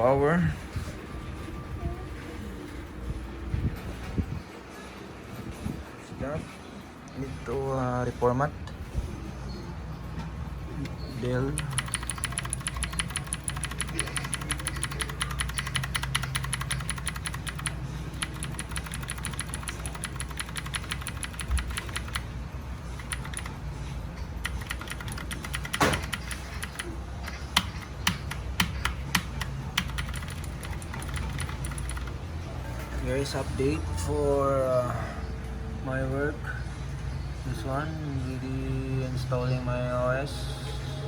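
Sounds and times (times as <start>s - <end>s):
keyboard key clicks: 11.6s - 22.2s, 24.4s - 32.2s.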